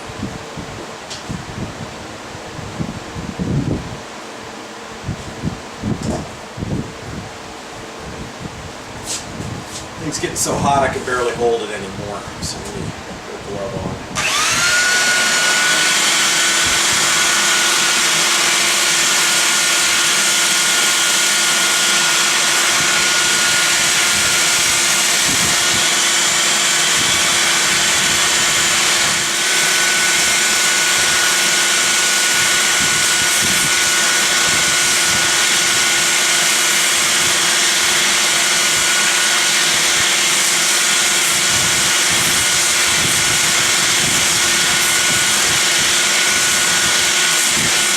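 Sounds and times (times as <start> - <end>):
dust extraction vacuum: 0.0 - 47.9
belt sander sanding wood: 14.2 - 47.9.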